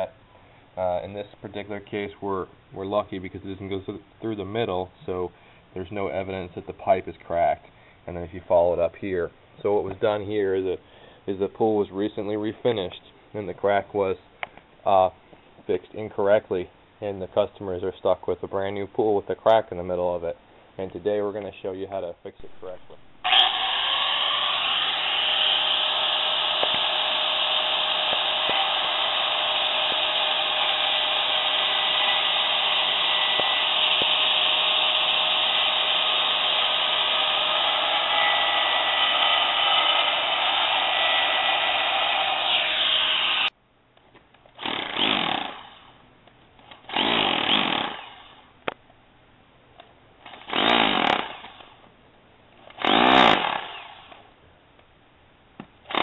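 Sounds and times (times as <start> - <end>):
electric power tool running: 23.2 - 43.5, 50.4 - 51.4, 52.8 - 54.0.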